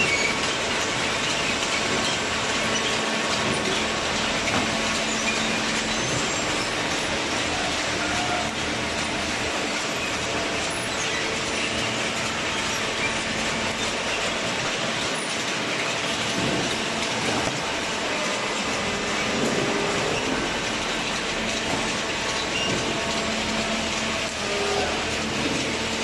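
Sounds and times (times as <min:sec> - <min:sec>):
machinery rushing noise: 0:00.4 - 0:26.0.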